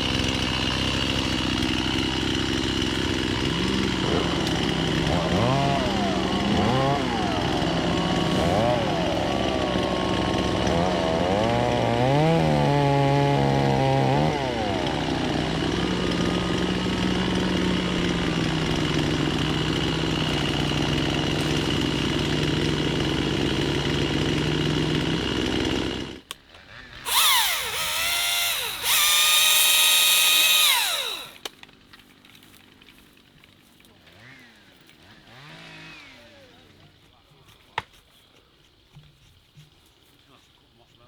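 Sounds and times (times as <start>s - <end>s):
small engine revving: 0.0s - 31.5s, 34.0s - 36.8s
motor engine running: 27.1s - 31.4s.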